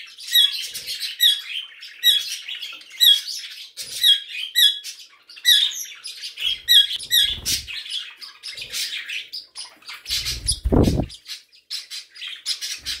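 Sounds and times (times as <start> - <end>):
small birds chirping and chattering: 0.0 - 13.0
low rustling thump: 10.5 - 11.1.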